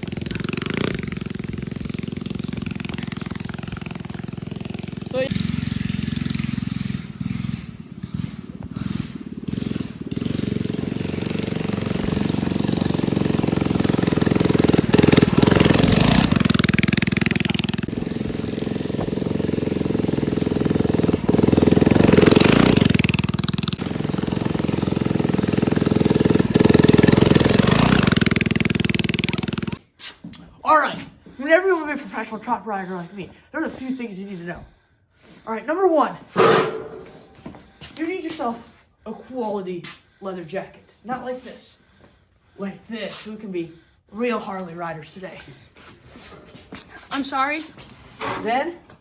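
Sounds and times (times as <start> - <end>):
mini bike engine revving: 0.0 - 29.8.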